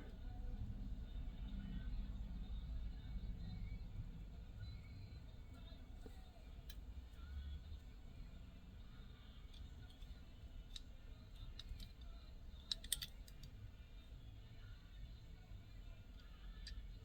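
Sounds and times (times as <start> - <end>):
toy car clicking and tapping: 10.7 - 13.5.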